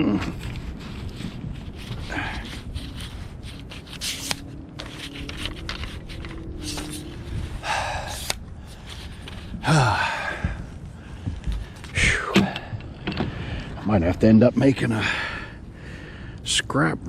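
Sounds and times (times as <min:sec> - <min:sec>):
clicks and knocks of gear: 0:01.8 - 0:07.2
man breathing hard and grunting: 0:02.0 - 0:02.7, 0:07.6 - 0:13.8, 0:14.9 - 0:16.4.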